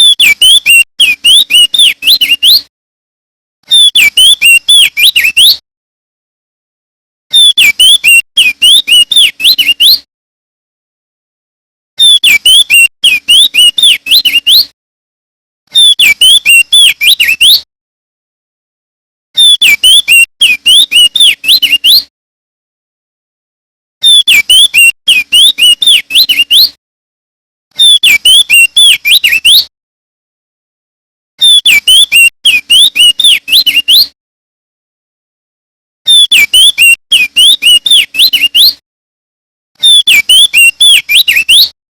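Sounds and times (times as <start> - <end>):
bird singing whistled phrases: 0.0 - 2.7, 3.7 - 5.6, 7.3 - 10.1, 12.0 - 14.7, 15.7 - 17.7, 19.4 - 22.1, 24.0 - 26.8, 27.8 - 29.7, 31.4 - 34.2, 36.1 - 38.8, 39.8 - 41.8.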